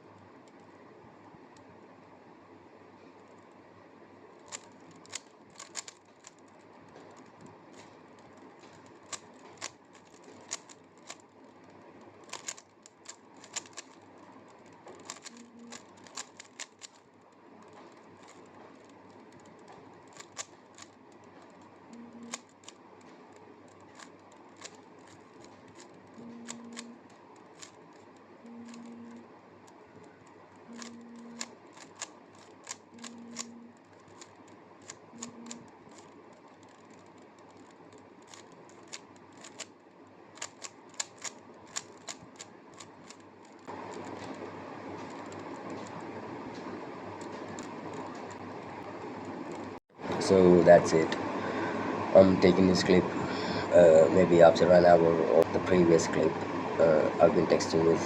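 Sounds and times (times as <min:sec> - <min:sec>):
plastic puzzle cube clicking: 0:04.4 - 0:17.0, 0:17.6 - 0:29.0, 0:29.6 - 0:39.8, 0:40.4 - 0:46.1.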